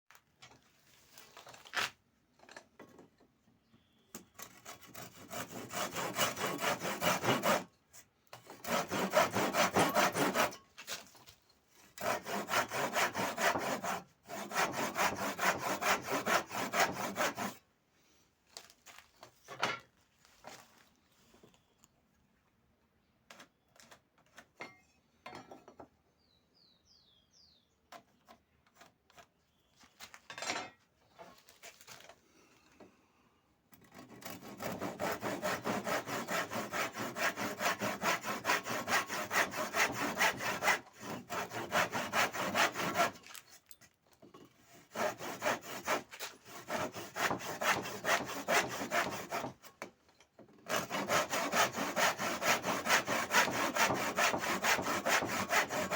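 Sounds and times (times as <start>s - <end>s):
handsaw rasping through wood: 4.4s - 7.7s, 8.5s - 10.6s, 12.0s - 17.6s, 33.8s - 43.2s, 44.7s - 49.7s, 50.7s - 55.9s.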